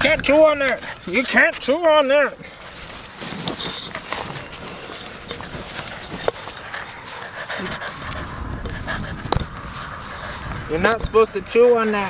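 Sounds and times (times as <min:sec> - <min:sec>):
puppy panting: 0:00.0 - 0:12.0
puppy chewing clicks: 0:02.4 - 0:12.0.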